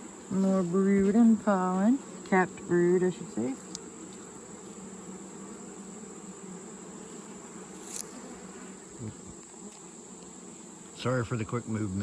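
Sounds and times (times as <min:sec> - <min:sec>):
bees buzzing: 0:00.0 - 0:12.0.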